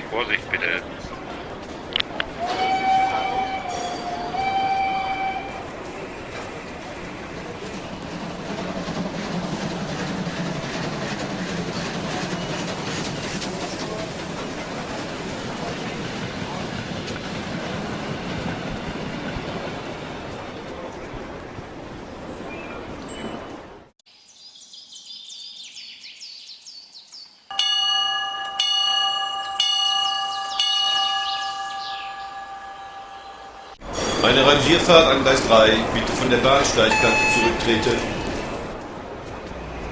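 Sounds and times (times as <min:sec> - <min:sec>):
train wheels rumbling on rails: 0:00.0 - 0:23.9, 0:33.2 - 0:39.9
bell ringing: 0:03.4 - 0:05.6, 0:27.5 - 0:38.7
birds chirping: 0:18.7 - 0:27.5, 0:29.8 - 0:38.7.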